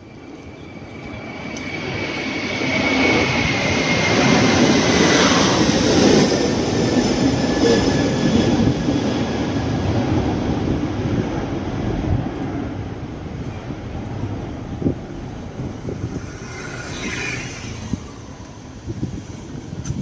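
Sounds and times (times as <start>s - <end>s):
rushing vehicle rumble: 0.9s - 20.0s
faint high whine: 13.0s - 19.8s.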